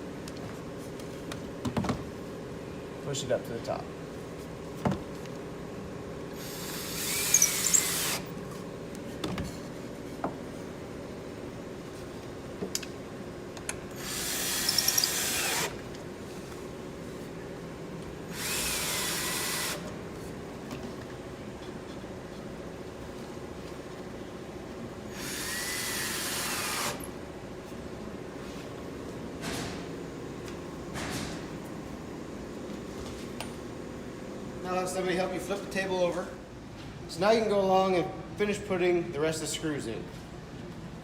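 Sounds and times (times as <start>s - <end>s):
power drill driving screws into wood: 6.4s - 8.3s, 13.9s - 15.8s, 18.3s - 19.8s, 25.1s - 27.0s.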